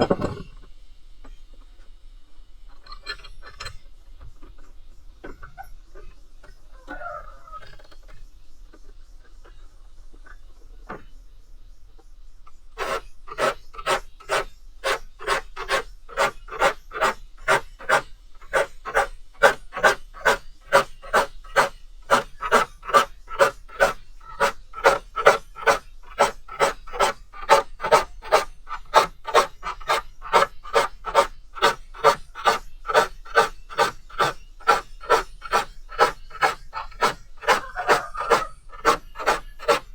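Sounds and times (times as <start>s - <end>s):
file rasping on saw teeth: 12.8s - 39.9s.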